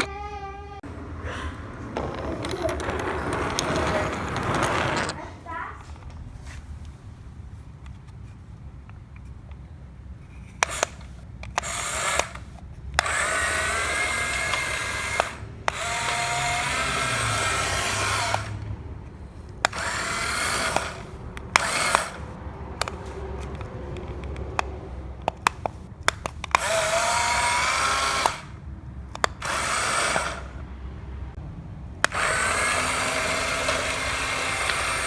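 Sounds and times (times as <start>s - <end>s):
sharp clicks: 10.5s - 18.7s, 19.5s - 30.6s
small electric motor whirring: 10.5s - 18.8s, 19.6s - 23.7s, 26.1s - 30.6s, 32.0s - 35.0s.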